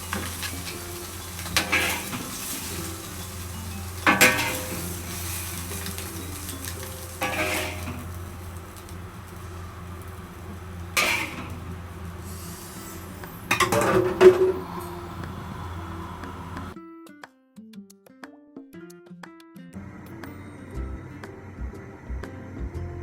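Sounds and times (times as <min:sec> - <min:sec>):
food sizzling in a pan: 0:00.0 - 0:16.8
steady low hum: 0:00.0 - 0:16.8, 0:19.8 - 0:23.0.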